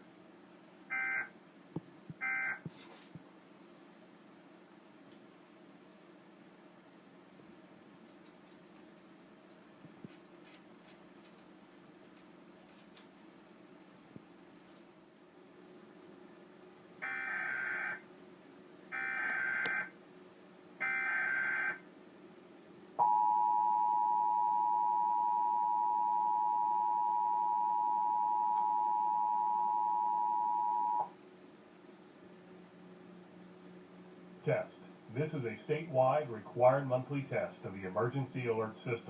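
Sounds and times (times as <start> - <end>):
two-tone attention signal: 23.0 - 31.1.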